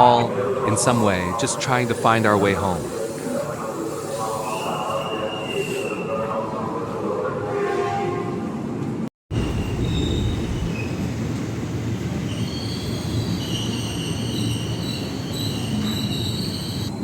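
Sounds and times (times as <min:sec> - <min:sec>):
wheels squealing on rails: 0:00.7 - 0:06.8, 0:09.4 - 0:17.0
electric train rumbling: 0:08.4 - 0:17.0.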